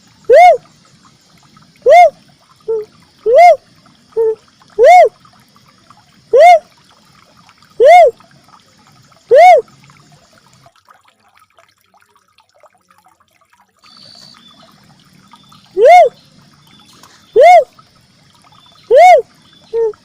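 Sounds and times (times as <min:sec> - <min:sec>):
dove call hollow notes: 0:15.7 - 0:16.2, 0:18.8 - 0:20.0.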